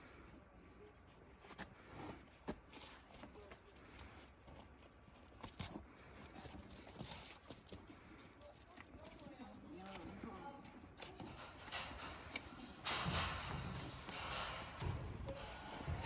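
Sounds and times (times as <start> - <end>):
horse moving about: 6.4 - 16.0.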